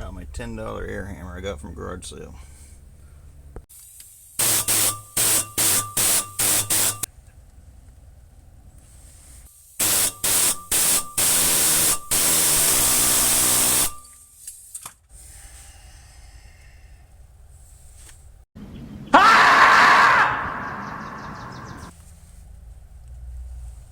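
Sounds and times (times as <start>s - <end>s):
pneumatic air hammer bursts: 3.7s - 7.1s, 9.5s - 14.9s.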